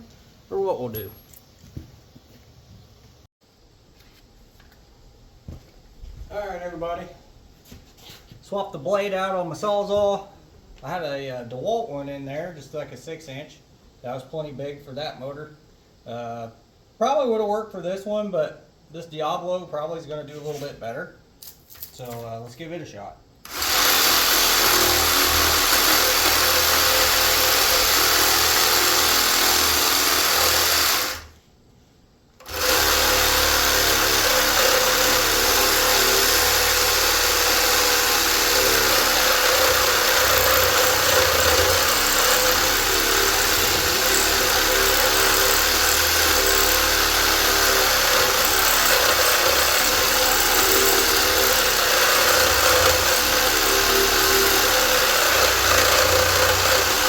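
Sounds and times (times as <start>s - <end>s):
reciprocating saw cutting metal: 23.5s - 31.3s, 32.4s - 57.0s.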